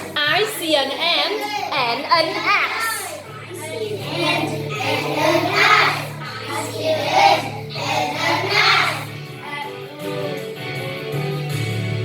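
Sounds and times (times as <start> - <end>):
music playing: 0.0 - 12.0
children chanting: 1.4 - 9.2.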